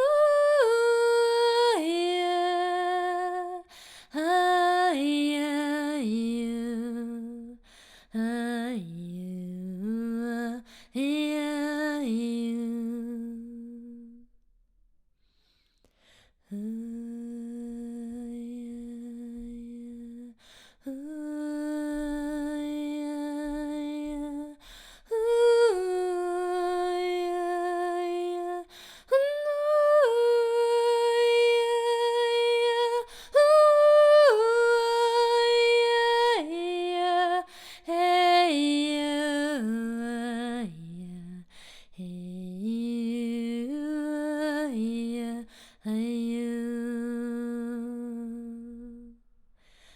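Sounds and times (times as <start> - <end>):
woman singing wordless chant: 0.0 - 14.2, 16.4 - 49.2.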